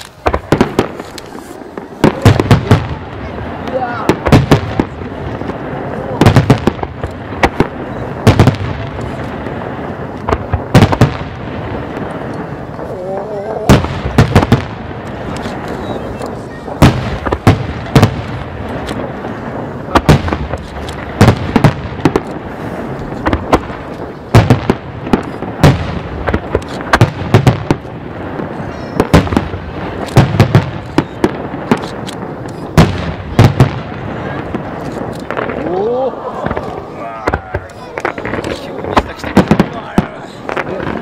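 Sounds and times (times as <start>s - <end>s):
fireworks shells bursting: 0.0s - 3.0s, 13.6s - 35.7s
loud sharp firework bangs: 0.0s - 41.0s.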